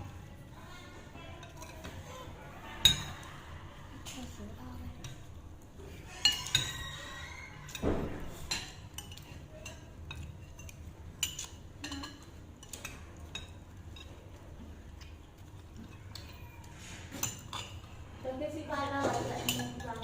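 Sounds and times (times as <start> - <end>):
cutlery clinking against dishes: 1.4 - 2.2, 2.8 - 3.3, 6.1 - 18.0, 19.0 - 20.0.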